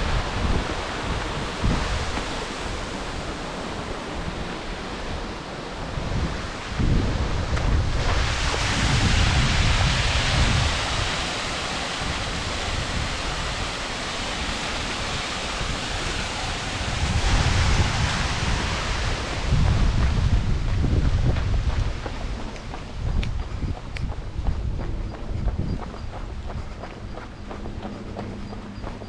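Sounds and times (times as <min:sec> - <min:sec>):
waterfall rushing: 0:00.0 - 0:20.6
wind buffeting microphone: 0:00.0 - 0:29.0.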